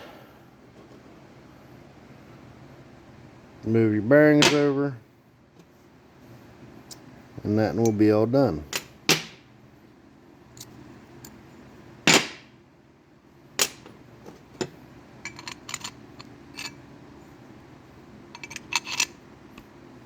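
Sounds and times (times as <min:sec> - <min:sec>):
metal engine parts clacking: 0:14.6 - 0:16.8, 0:18.3 - 0:19.2.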